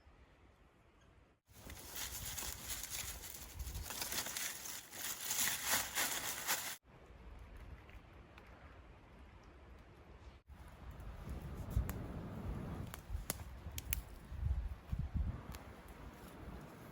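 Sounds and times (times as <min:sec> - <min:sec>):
dry plant material crackling: 0:01.5 - 0:06.8.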